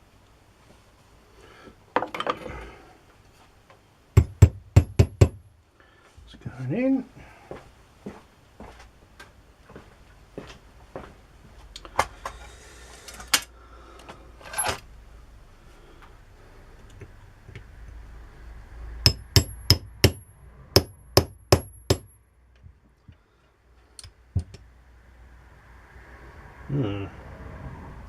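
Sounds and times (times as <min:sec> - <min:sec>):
small hammer tapping metal: 0:19.1 - 0:22.2
metal parts knocking and clicking: 0:24.0 - 0:24.6.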